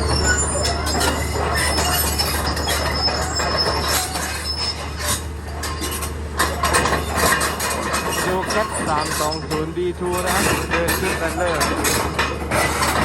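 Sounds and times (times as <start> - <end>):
diesel engine humming: 0.0 - 13.0
track chains squealing and clanking: 0.0 - 13.0.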